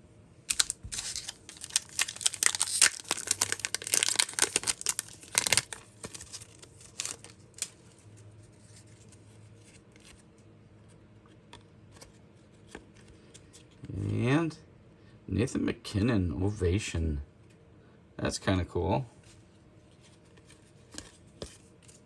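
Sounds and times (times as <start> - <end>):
cards clicking: 0.5 - 6.2
wrapper crinkling and tearing: 0.5 - 7.8.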